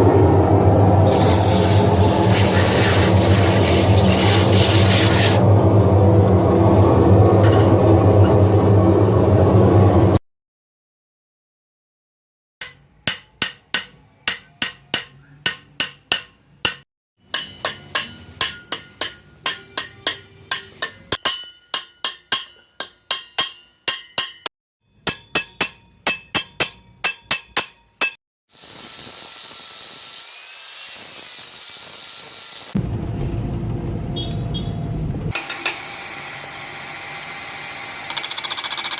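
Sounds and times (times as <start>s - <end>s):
hammer striking copper sheet: 12.6s - 28.2s.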